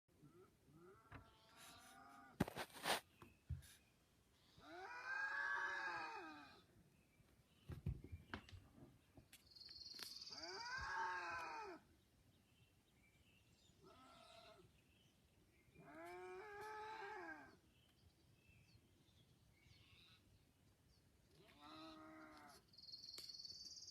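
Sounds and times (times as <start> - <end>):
pained wailing calls: 4.6 - 6.6, 10.3 - 11.8, 15.8 - 17.6.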